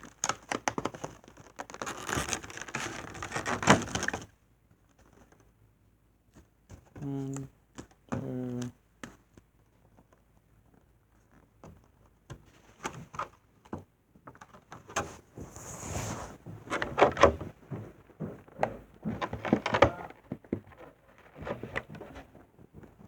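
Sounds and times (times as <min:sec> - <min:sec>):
packaging rustling and crinkling: 0:15.4 - 0:23.0.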